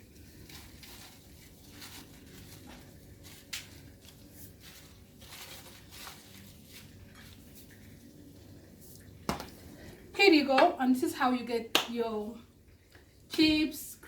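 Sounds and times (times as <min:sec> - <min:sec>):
potato chips rustling and clattering: 0:00.0 - 0:08.0.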